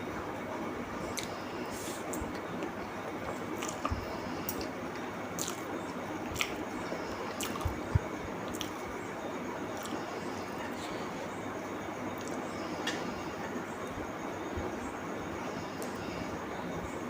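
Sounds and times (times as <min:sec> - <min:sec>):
steady background hiss: 0:00.0 - 0:17.0
wet chewing and mouth smacks: 0:03.6 - 0:03.9, 0:05.4 - 0:08.8, 0:09.8 - 0:10.0.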